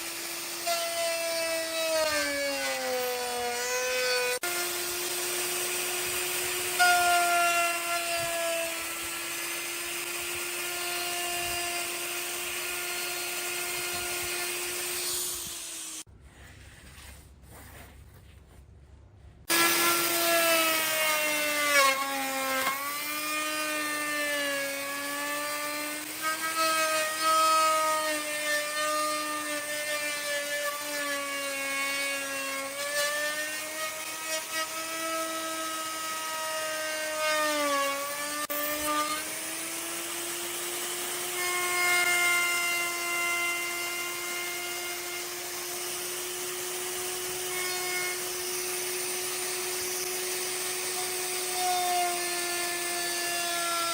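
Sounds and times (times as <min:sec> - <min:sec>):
power tool motor whining: 0:00.0 - 0:16.1.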